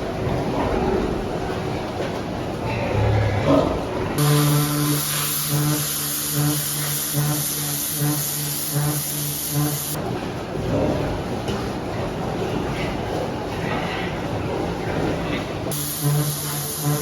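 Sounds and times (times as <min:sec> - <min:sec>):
pressure washer spraying hiss: 0:04.2 - 0:10.0, 0:15.7 - 0:17.0
pulsing low hum: 0:04.2 - 0:10.0, 0:15.7 - 0:17.0.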